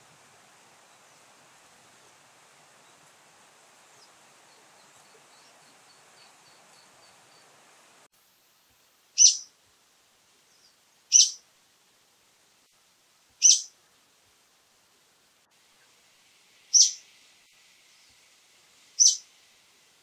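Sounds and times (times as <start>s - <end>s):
bird giving sharp high calls: 9.2s - 9.5s, 11.1s - 11.4s, 13.4s - 13.7s, 16.7s - 17.0s, 19.0s - 19.2s.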